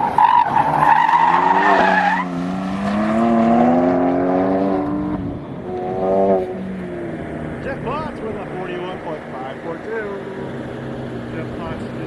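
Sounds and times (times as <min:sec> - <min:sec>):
car engine accelerating hard: 0:00.0 - 0:12.0.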